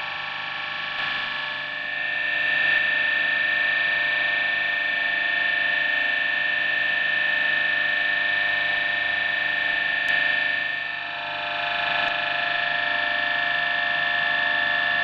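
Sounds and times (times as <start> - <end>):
electric motor whining and humming: 0.0 - 15.0.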